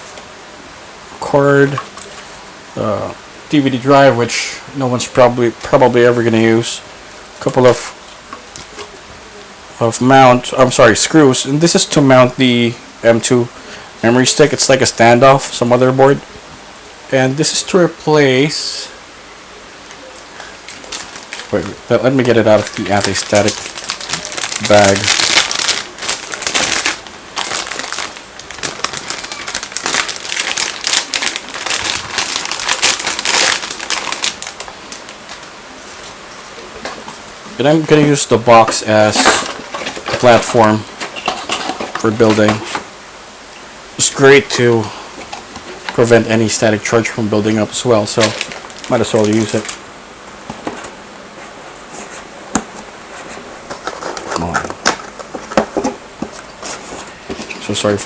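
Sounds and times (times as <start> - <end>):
plastic bag crinkling: 20.7 - 36.1, 37.6 - 42.8, 47.6 - 49.8.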